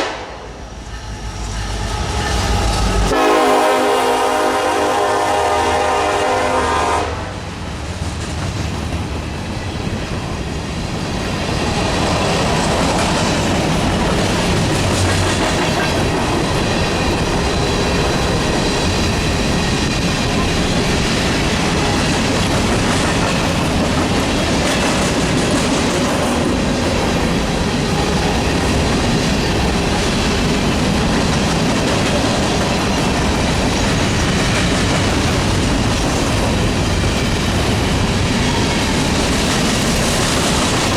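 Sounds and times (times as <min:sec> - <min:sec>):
train horn blast: 0:00.0 - 0:01.2, 0:01.8 - 0:07.5
freight train rolling past: 0:00.0 - 0:40.9.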